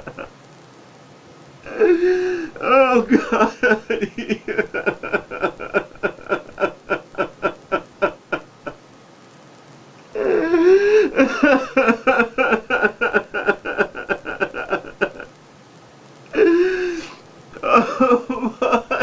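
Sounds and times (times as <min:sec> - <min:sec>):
man sobbing: 0:00.0 - 0:00.3, 0:01.6 - 0:08.8, 0:10.2 - 0:15.3, 0:16.3 - 0:19.0
man wailing: 0:01.7 - 0:08.8, 0:10.2 - 0:15.3, 0:16.3 - 0:19.0.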